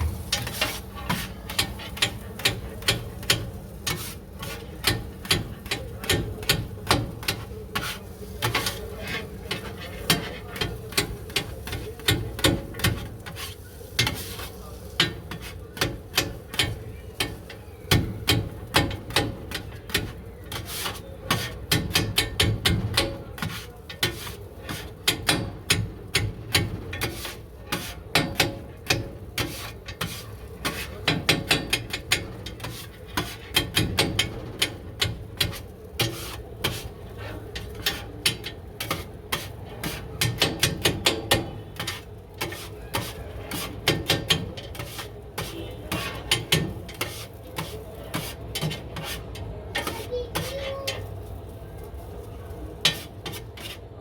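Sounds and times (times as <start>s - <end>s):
utensils scraping and rubbing: 0.0s - 17.6s, 18.4s - 51.1s, 52.8s - 54.0s.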